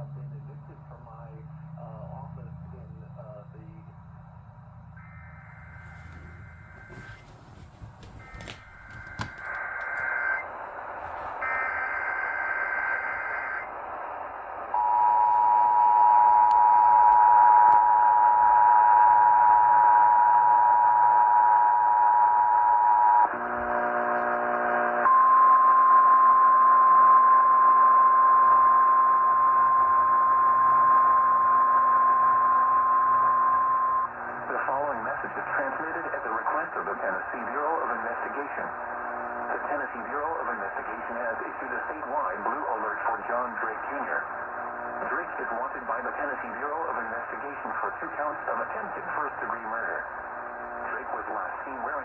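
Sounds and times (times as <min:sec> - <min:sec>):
radio hiss: 0:00.0 - 0:04.0, 0:05.0 - 0:16.5, 0:33.8 - 0:52.0.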